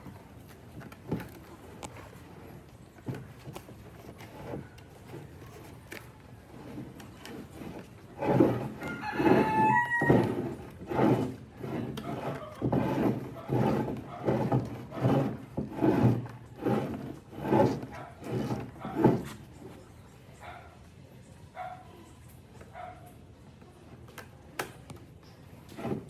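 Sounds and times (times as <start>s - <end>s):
hand tool rubbing on wood: 6.5s - 19.6s
rooster crowing: 8.8s - 10.4s.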